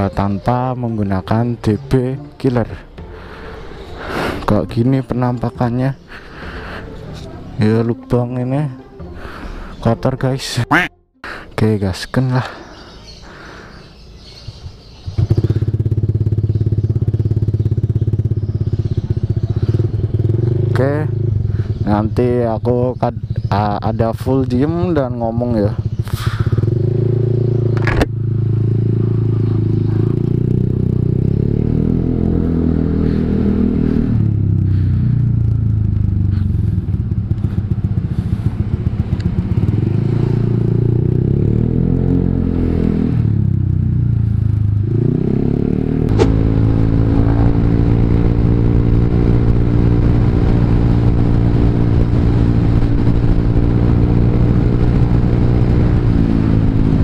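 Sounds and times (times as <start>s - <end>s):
scooter engine revving: 14.4s - 22.1s, 25.4s - 57.0s.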